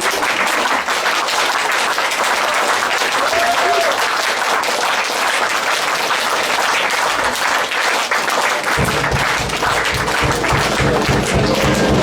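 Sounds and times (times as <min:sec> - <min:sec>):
audience applauding: 0:00.0 - 0:12.0
music with drum beat: 0:08.8 - 0:12.0.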